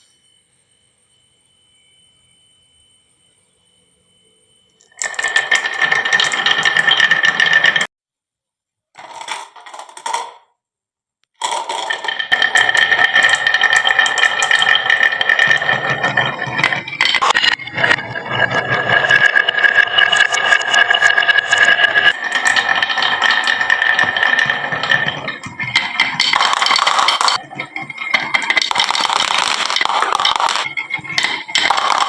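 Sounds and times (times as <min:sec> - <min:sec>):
marbles rattling down wooden run: 0:04.8 - 0:07.9, 0:09.0 - 0:10.4, 0:11.4 - 0:32.0.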